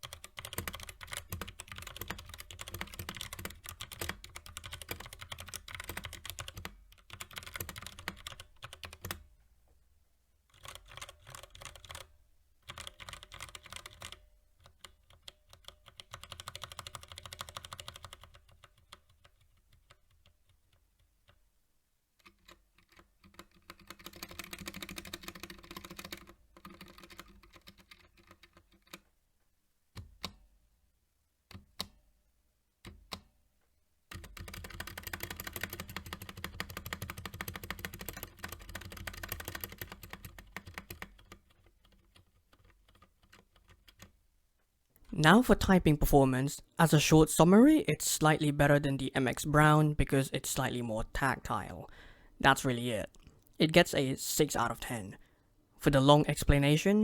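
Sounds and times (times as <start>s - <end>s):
typing on mechanical keyboard: 0.0s - 9.2s, 10.5s - 21.4s, 22.2s - 29.1s, 34.1s - 44.2s.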